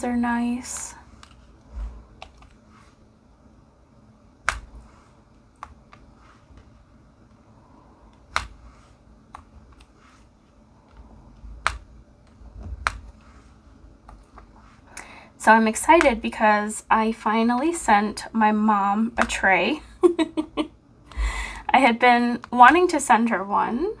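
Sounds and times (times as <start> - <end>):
sharp clicks and taps: 4.5 - 4.8, 11.6 - 11.9, 12.6 - 13.2, 15.9 - 16.3.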